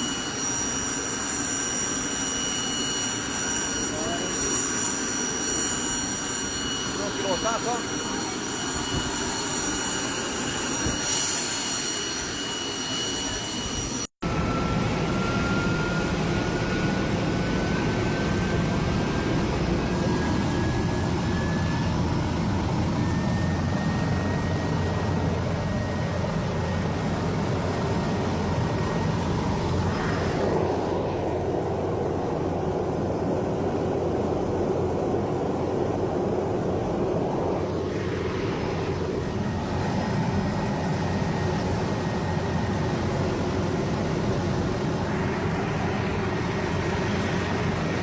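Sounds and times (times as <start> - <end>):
helicopter turbine whine: 0.0 - 48.0.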